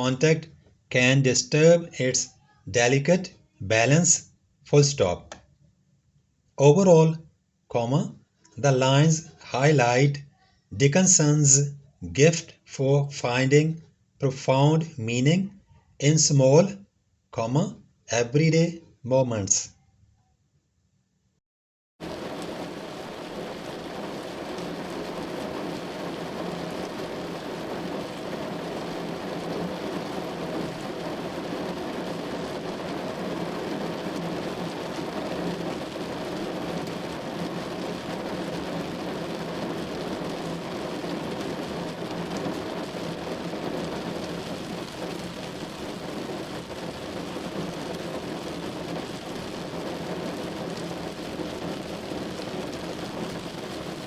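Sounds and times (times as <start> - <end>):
steady rain-like noise: 22.0 - 54.0.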